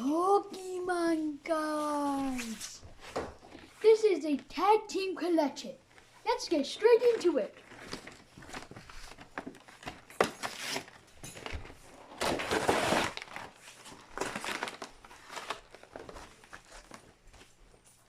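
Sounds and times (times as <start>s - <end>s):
plastic packaging crinkling and tearing: 7.0s - 17.5s.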